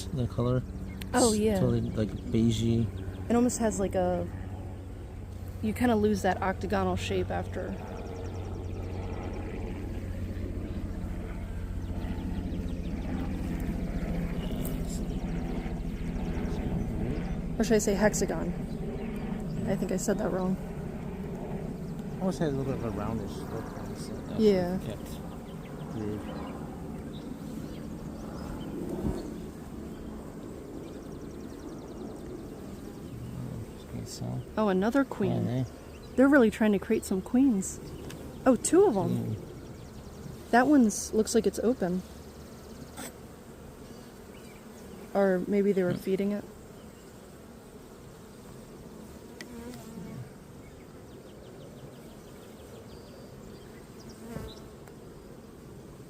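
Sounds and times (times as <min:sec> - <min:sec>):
bees humming: 0:00.0 - 0:56.0
honeybees buzzing: 0:00.0 - 0:56.0.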